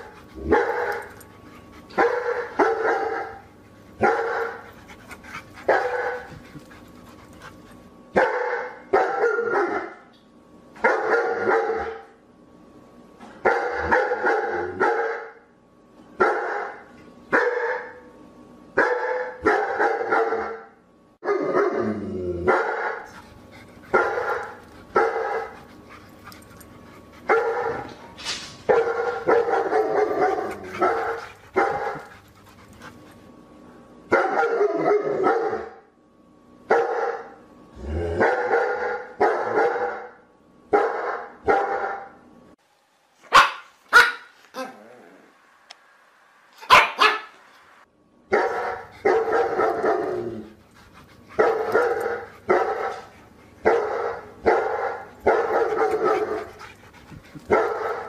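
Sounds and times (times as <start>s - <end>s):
dog barking: 2.0s - 3.4s, 4.0s - 4.6s, 5.7s - 6.3s, 8.2s - 10.0s, 10.8s - 12.1s, 13.4s - 15.4s, 16.2s - 18.0s, 18.8s - 21.8s, 22.5s - 23.1s, 23.9s - 25.6s, 27.3s - 27.9s, 28.7s - 32.1s, 34.1s - 35.8s, 36.7s - 37.4s, 38.2s - 42.1s, 43.3s - 44.7s, 46.6s - 47.4s, 48.3s - 50.3s, 51.4s - 56.5s, 57.5s - 58.0s.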